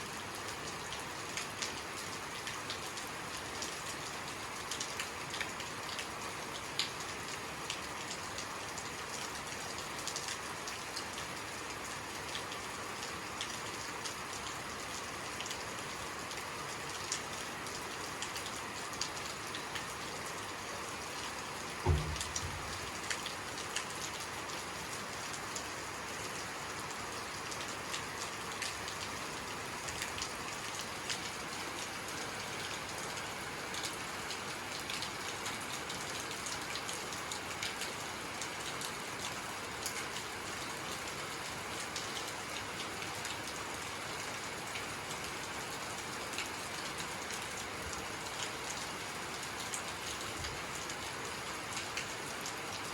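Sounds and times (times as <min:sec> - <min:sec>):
rain hissing: 0:18.2 - 0:23.9
low thump: 0:21.8 - 0:22.9
raindrop ticks: 0:21.8 - 0:24.6.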